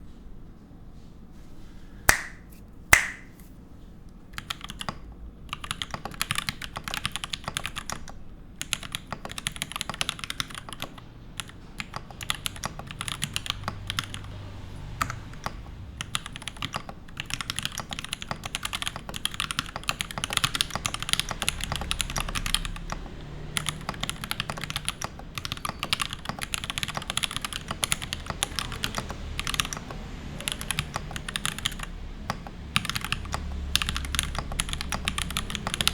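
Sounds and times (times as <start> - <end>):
loud sharp clicks: 2.1 - 3.5
mechanical keyboard typing: 4.4 - 14.4, 15.0 - 35.9.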